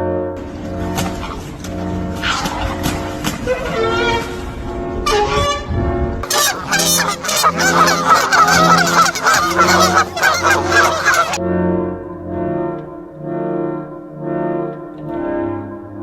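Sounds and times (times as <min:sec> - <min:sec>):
geese honking: 0:00.4 - 0:04.6, 0:06.2 - 0:11.4
brass-like music: 0:00.4 - 0:11.4.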